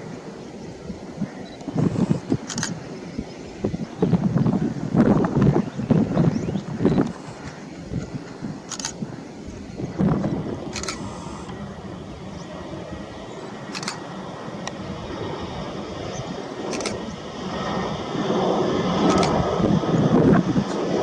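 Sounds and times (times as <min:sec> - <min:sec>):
jet engine rumble: 0:00.0 - 0:21.0
short clicks: 0:10.7 - 0:11.5, 0:19.1 - 0:19.4.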